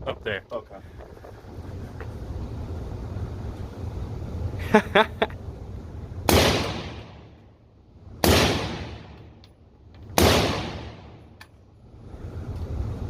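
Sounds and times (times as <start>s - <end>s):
rifle shots echoing: 6.3s - 7.3s, 8.2s - 9.3s, 10.2s - 11.3s.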